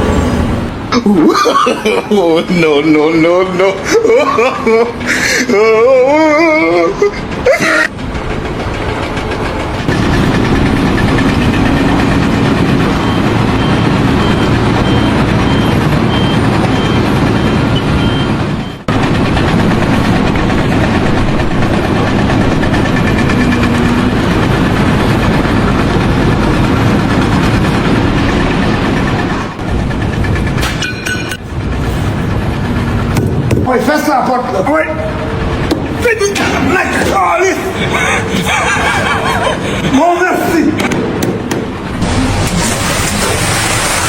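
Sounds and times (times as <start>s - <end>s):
heavy vehicle engine running: 0.0s - 1.0s, 1.8s - 44.0s
reversing alarm beeping: 11.4s - 19.0s.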